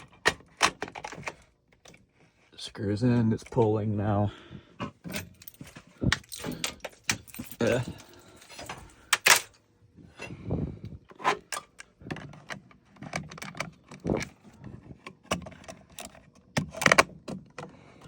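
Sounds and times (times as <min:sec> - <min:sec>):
clicks and rattles of hardware: 0:00.0 - 0:02.0, 0:05.0 - 0:09.6, 0:11.1 - 0:17.8.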